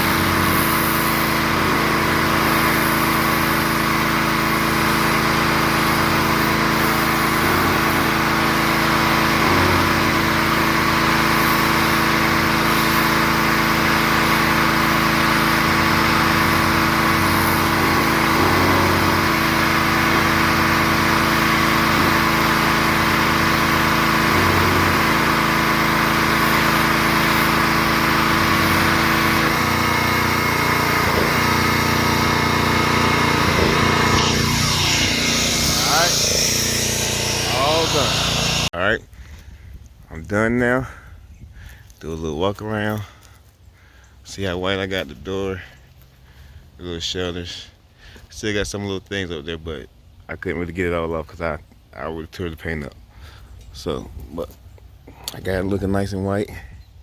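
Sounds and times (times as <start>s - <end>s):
water spray hiss: 0.0s - 38.7s
pressure washer engine running: 0.0s - 38.8s.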